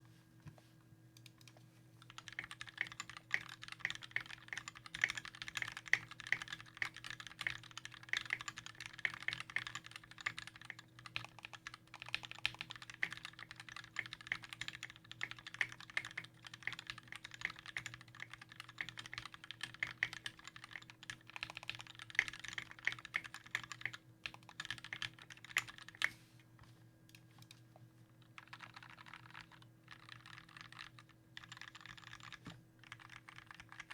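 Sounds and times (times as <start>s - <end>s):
faint steady hum: 0.0s - 33.9s
mechanical keyboard typing: 1.3s - 26.1s, 28.2s - 33.9s.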